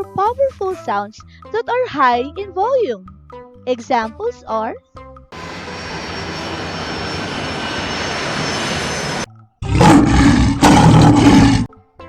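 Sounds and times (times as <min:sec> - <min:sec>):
steady rushing noise: 0:05.4 - 0:09.3
deep roar: 0:05.4 - 0:11.7.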